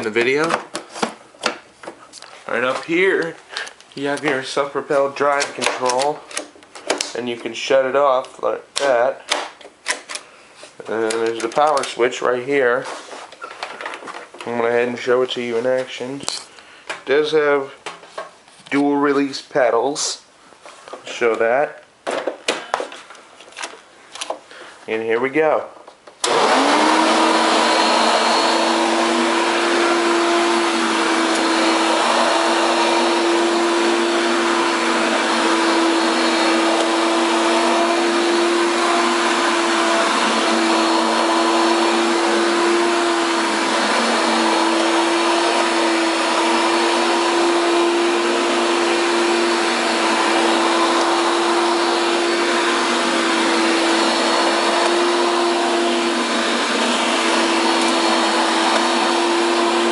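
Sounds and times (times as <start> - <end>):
vacuum cleaner running: 26.2 - 59.9.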